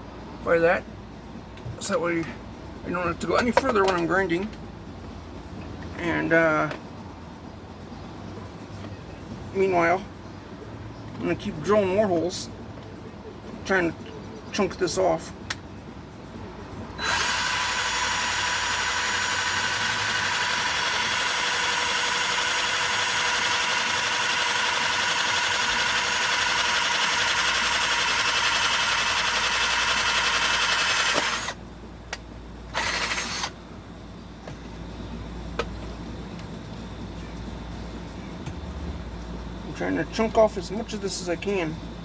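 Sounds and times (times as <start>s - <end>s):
power drill boring holes: 17.0s - 31.6s, 32.8s - 33.5s.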